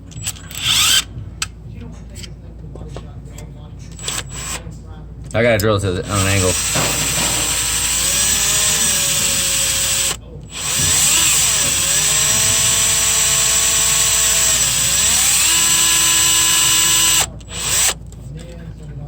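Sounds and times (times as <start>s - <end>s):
power drill whining: 0.2s - 1.1s, 4.0s - 4.6s, 6.0s - 18.0s.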